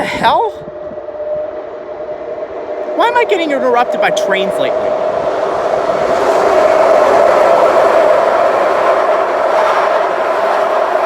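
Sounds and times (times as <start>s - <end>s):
train passing: 0.0s - 11.0s.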